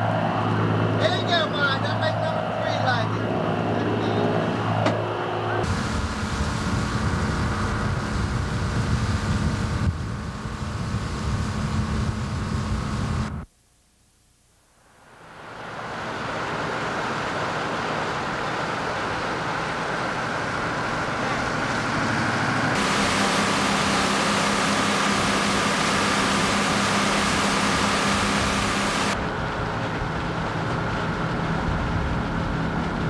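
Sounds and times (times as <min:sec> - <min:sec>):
boat engine drone: 0:00.0 - 0:13.4, 0:15.0 - 0:33.0
wind and water hiss: 0:05.6 - 0:13.5, 0:14.8 - 0:33.0.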